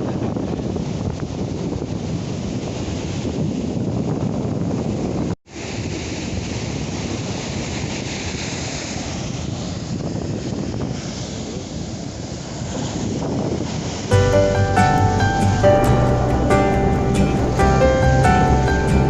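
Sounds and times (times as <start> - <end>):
sea surf washing on beach: 0.0 - 19.0
wind buffeting microphone: 0.0 - 19.0
music: 14.1 - 19.0.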